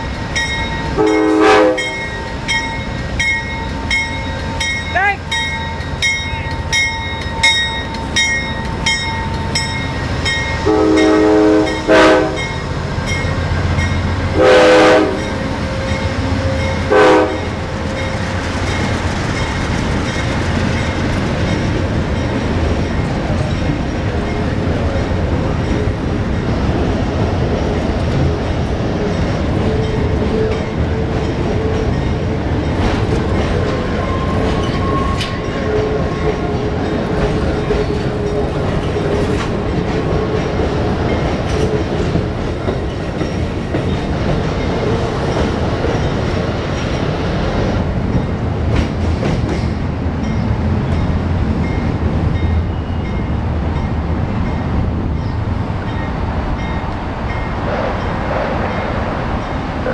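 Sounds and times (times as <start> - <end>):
train rumbling past: 0.0 - 59.9
bell ringing: 0.4 - 10.7
train horn blasts: 1.0 - 2.1, 10.6 - 12.6, 14.3 - 17.6
wheels clacking over rail joints: 15.2 - 49.9.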